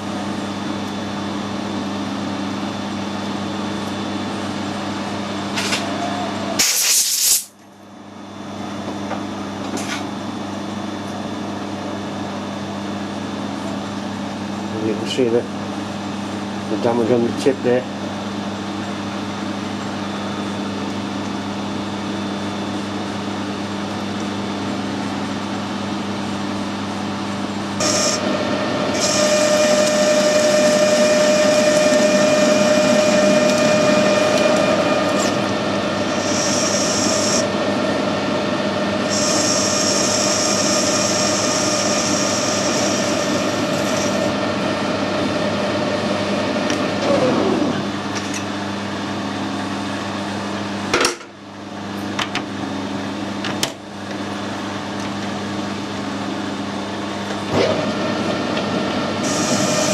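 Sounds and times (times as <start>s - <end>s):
rasping hissing cut into steel: 6.6s - 7.5s
machine tool humming: 27.6s - 47.4s, 57.8s - 59.9s
machine winding down whine: 27.8s - 46.1s, 57.9s - 59.9s.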